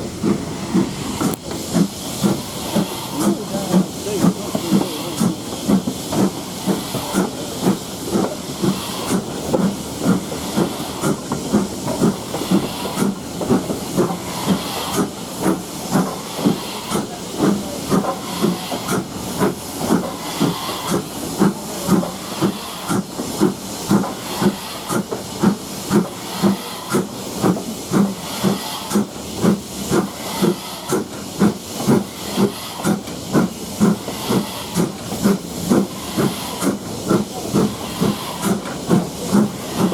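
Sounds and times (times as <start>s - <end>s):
steam engine exhaust beats: 0.0s - 39.9s
steam hissing: 0.0s - 39.9s.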